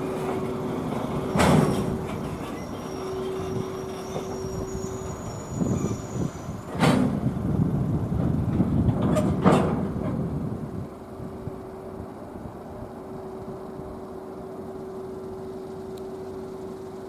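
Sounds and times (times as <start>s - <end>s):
metallic wheel clanks: 0.0s - 7.3s
train rumbling on rails: 0.0s - 17.0s.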